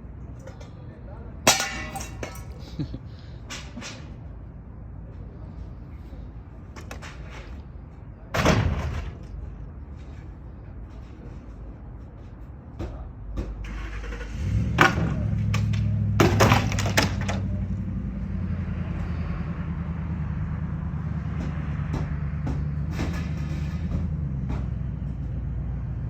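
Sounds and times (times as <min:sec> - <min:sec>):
vehicle engine starting and running: 0:13.6 - 0:26.0.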